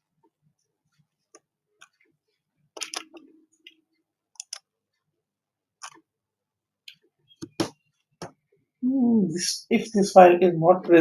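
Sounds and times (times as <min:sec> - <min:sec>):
computer mouse clicks: 0:02.8 - 0:05.1, 0:05.8 - 0:06.1.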